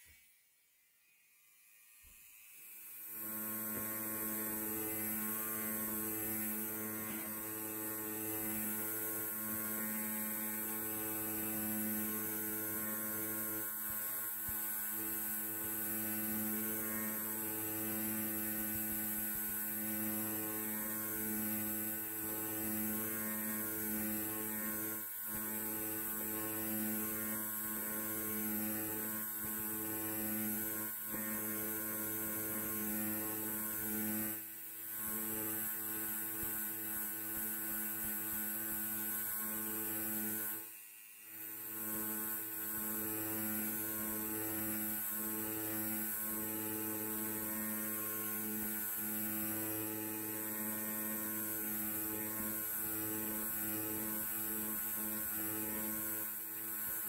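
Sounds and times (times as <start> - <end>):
electric hair clipper buzzing: 0.0 - 57.0.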